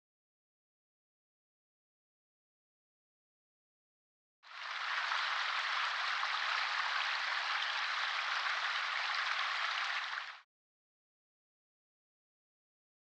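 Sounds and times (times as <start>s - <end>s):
rain-like hiss: 4.5s - 10.4s.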